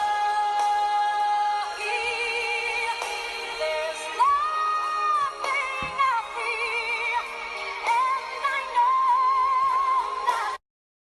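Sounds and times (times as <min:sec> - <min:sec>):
music with sung melody: 0:00.0 - 0:10.6.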